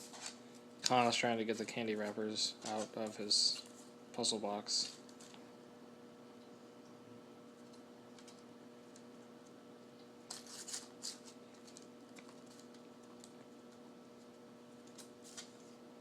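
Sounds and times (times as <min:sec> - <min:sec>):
light clicks and crinkles: 0:04.8 - 0:05.4, 0:07.5 - 0:15.8.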